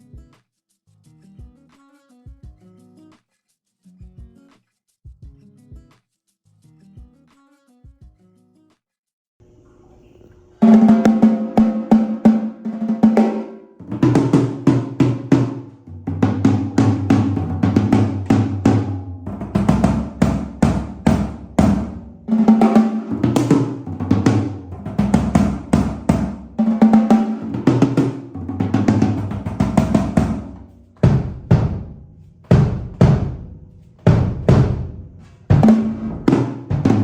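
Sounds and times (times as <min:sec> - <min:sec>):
drum kit playing fills: 0:10.6 - 0:37.0.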